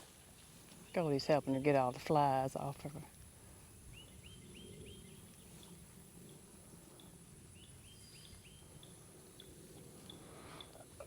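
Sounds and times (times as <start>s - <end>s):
small bird chirping: 6.9s - 10.7s.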